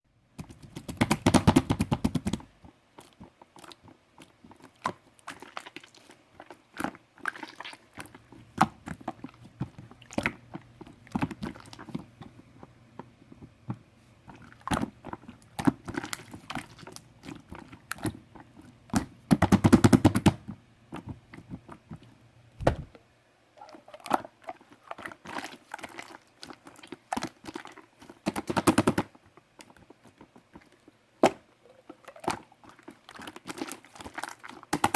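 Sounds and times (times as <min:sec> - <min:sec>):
hands squishing slime: 0:00.4 - 0:13.6, 0:14.2 - 0:20.4, 0:24.1 - 0:34.9.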